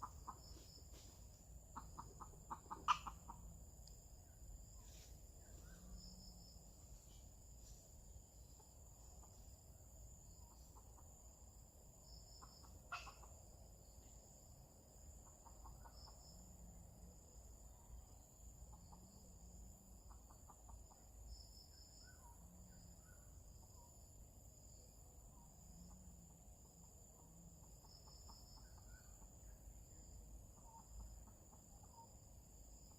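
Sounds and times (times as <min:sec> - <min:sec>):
junglefowl clucking: 0:00.0 - 0:03.7, 0:10.4 - 0:11.2, 0:12.3 - 0:13.4, 0:15.2 - 0:16.3, 0:20.0 - 0:21.2, 0:30.5 - 0:32.1
high insect drone: 0:00.0 - 0:32.9.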